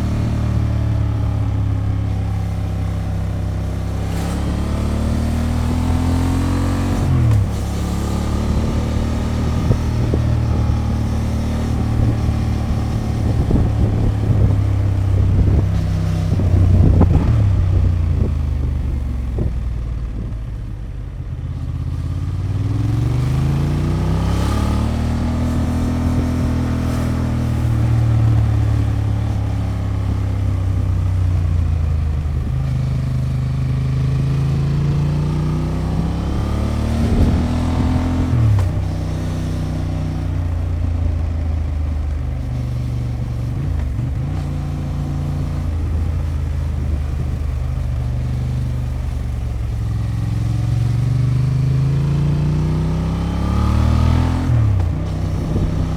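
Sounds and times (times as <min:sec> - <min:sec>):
motorcycle engine accelerating: 0:00.0 - 0:55.9.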